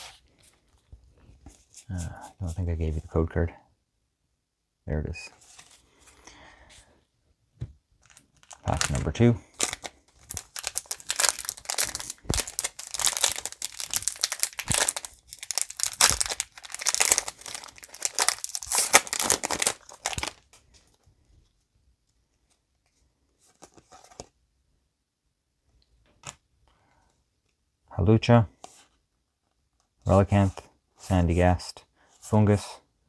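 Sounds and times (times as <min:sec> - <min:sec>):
foil wrapper crinkling and tearing: 0:08.0 - 0:20.4.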